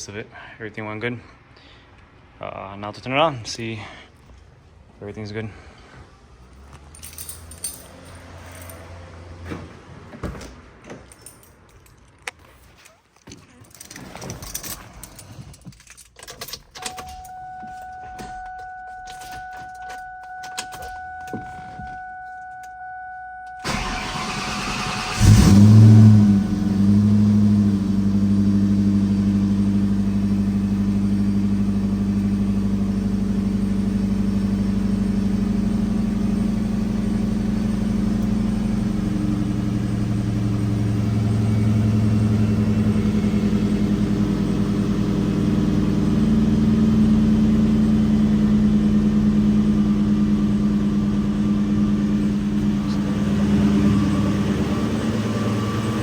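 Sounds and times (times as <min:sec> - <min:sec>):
car engine starting and idling: 0:15.8 - 0:56.0.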